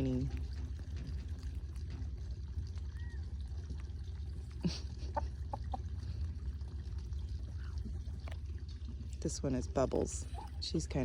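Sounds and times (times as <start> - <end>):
hens clucking: 4.8 - 6.0.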